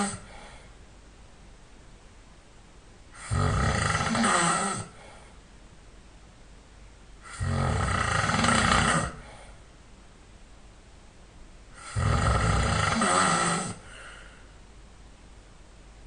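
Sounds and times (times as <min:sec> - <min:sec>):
person snoring loudly: 0:00.0 - 0:00.6, 0:03.1 - 0:05.2, 0:07.2 - 0:09.5, 0:11.8 - 0:14.3.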